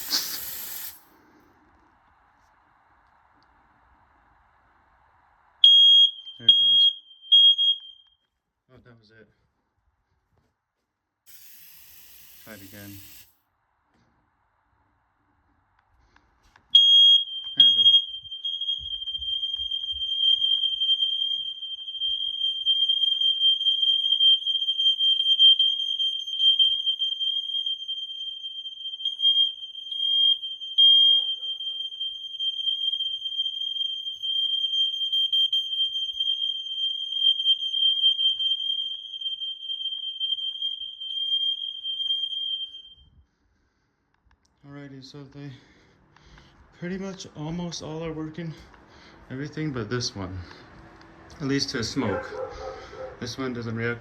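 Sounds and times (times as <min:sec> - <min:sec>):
smoke alarm high-pitched tone: 0:00.0 - 0:01.0, 0:05.6 - 0:08.3, 0:11.3 - 0:13.3, 0:16.8 - 0:43.2.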